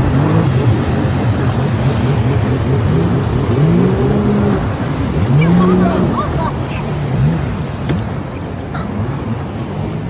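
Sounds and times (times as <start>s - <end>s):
motorbike engines revving: 0.0s - 10.0s.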